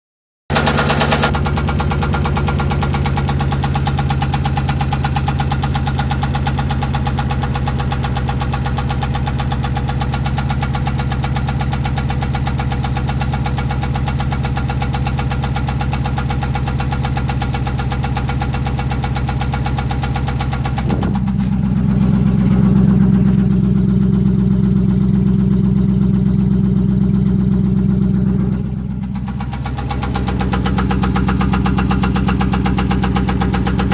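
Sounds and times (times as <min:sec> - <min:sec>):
engine idling with rhythmic knock: 0:00.5 - 0:33.9
low hum: 0:20.7 - 0:33.9.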